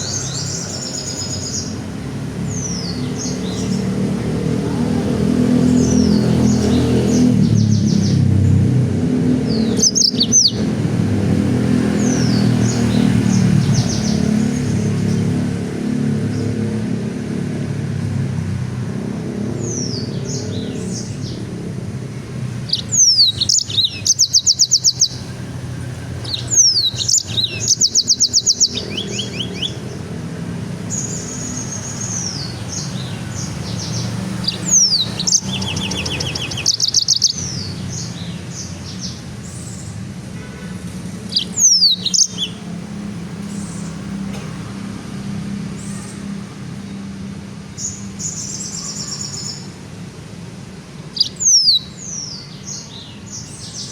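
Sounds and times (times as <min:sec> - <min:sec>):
songbird whistles and trills: 0:09.5 - 0:10.7, 0:22.7 - 0:25.3, 0:26.2 - 0:29.8, 0:41.3 - 0:42.6, 0:51.2 - 0:52.4.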